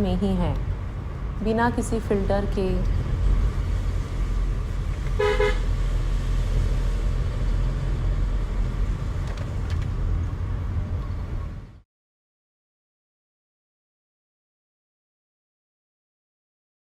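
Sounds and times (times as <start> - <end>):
vehicle engine rumbling: 0.0 - 11.8
car horn toot: 5.1 - 5.7.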